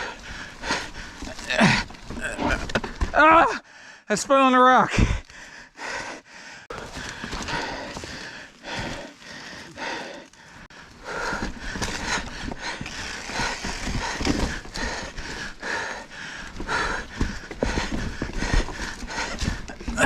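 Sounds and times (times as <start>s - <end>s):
person breathing hard: 0.0s - 2.0s, 3.6s - 4.1s, 4.9s - 20.0s
bike clattering over rocks: 11.1s - 20.0s.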